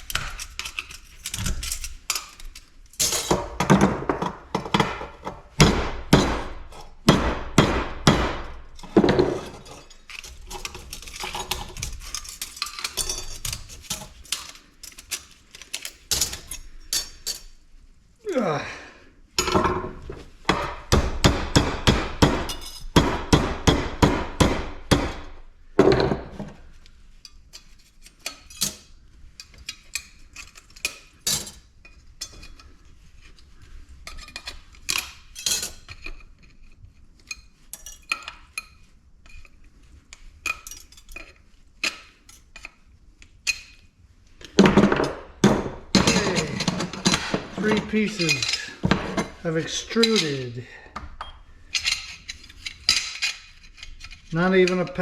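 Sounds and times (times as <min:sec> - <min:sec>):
metal parts clinking: 0:00.0 - 0:03.4, 0:08.8 - 0:17.6, 0:22.5 - 0:22.9, 0:45.9 - 0:50.6, 0:51.7 - 0:54.8.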